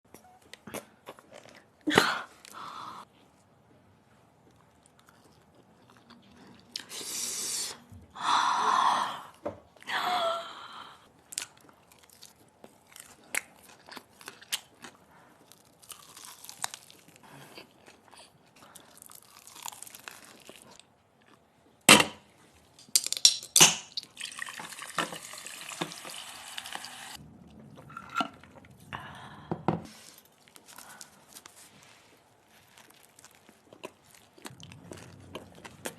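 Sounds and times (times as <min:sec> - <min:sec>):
chewing and crunching chicken: 0:04.1 - 0:06.9, 0:11.2 - 0:21.8, 0:29.9 - 0:35.9.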